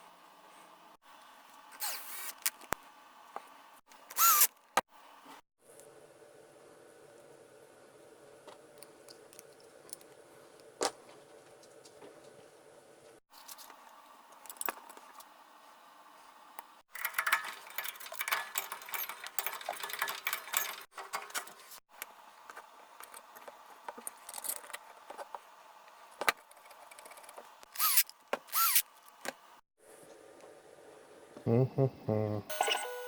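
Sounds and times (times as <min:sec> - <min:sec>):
short falling squeaks: 0:04.2 - 0:04.5, 0:27.8 - 0:28.8
metal tools clattering: 0:17.0 - 0:21.8.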